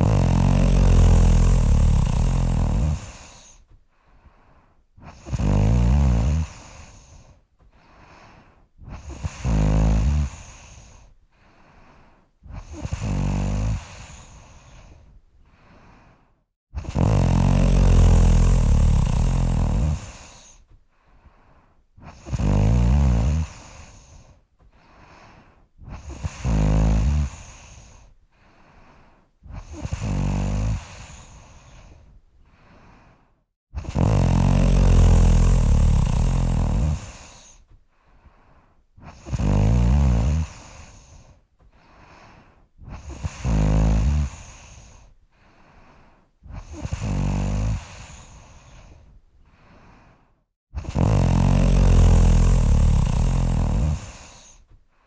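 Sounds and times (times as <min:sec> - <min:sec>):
person snoring: 0:00.0 - 0:03.6, 0:05.0 - 0:07.3, 0:08.8 - 0:11.1, 0:12.5 - 0:15.0, 0:16.8 - 0:20.6, 0:22.0 - 0:24.3, 0:25.8 - 0:28.1, 0:29.5 - 0:32.0, 0:33.8 - 0:37.6, 0:39.0 - 0:41.3, 0:42.8 - 0:45.1, 0:46.5 - 0:49.0, 0:50.8 - 0:54.7
quiet breaths: 0:00.0 - 0:55.0.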